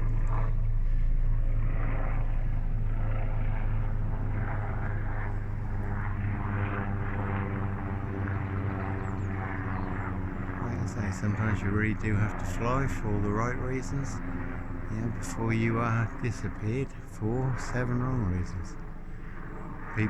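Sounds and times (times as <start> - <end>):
engine drone: 0.0 - 20.0.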